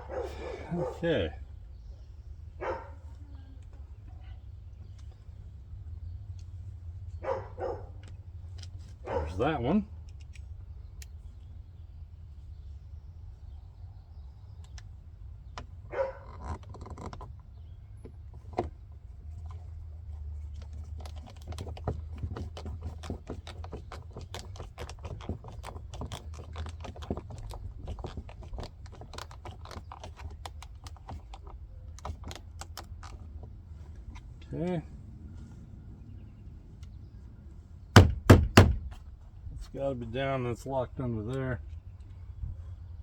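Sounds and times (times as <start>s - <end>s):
clicks and rattles of parts: 20.4s - 34.4s.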